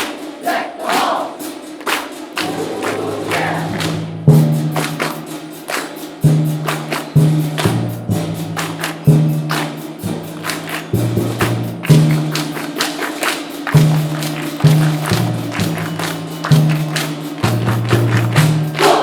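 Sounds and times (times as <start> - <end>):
percussion ensemble playing: 0.0 - 19.0.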